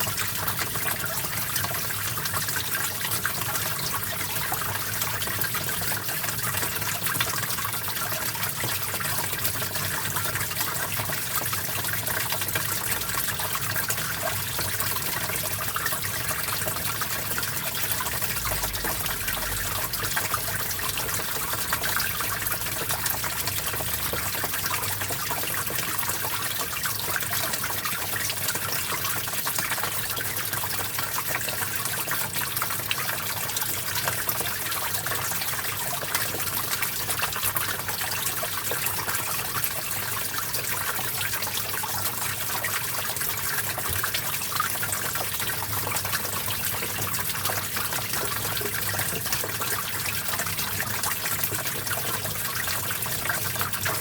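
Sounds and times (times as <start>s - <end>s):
stream babbling over rocks: 9.4s - 40.9s.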